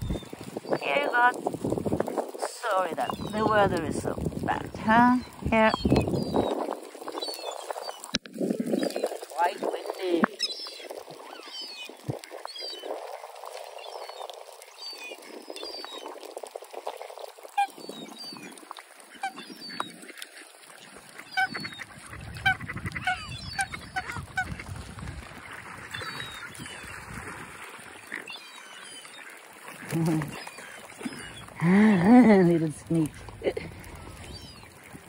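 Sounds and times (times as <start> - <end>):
wind rumbling on microphone: 0.0 - 35.0
bird chirping calls: 2.6 - 3.9, 5.1 - 8.1, 21.2 - 24.6, 28.0 - 34.9
waterfowl honking: 17.5 - 35.0.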